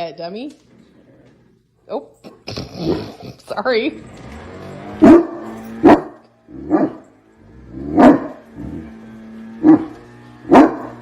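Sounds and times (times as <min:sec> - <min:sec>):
dog barking: 0:05.0 - 0:07.0, 0:07.9 - 0:08.4, 0:09.6 - 0:11.0.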